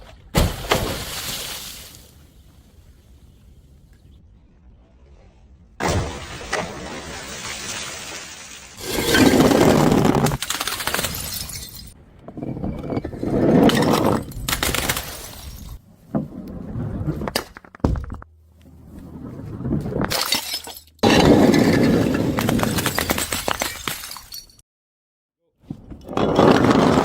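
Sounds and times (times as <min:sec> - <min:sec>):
glass bottles smashing: 0:08.8 - 0:12.0, 0:13.7 - 0:15.8, 0:20.1 - 0:21.8, 0:22.4 - 0:24.6
glass shards tinkling: 0:23.8 - 0:24.6.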